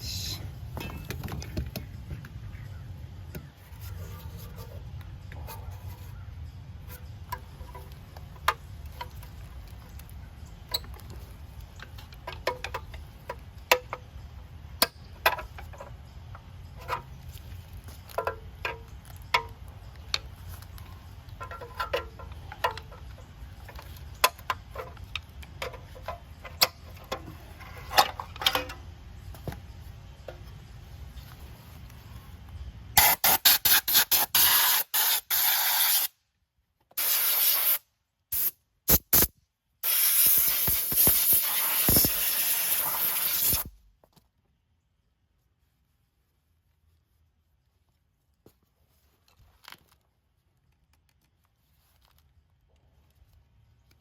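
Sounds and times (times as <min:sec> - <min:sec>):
hand tools clicking and tapping metal: 0:06.8 - 0:28.9.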